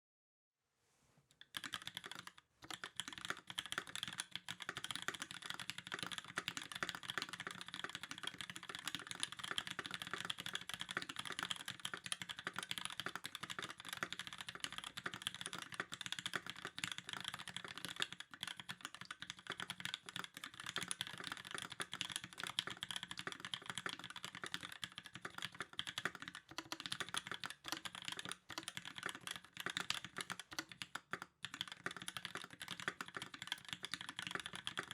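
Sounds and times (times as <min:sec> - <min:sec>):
fast mechanical keyboard typing: 0:01.5 - 0:34.9.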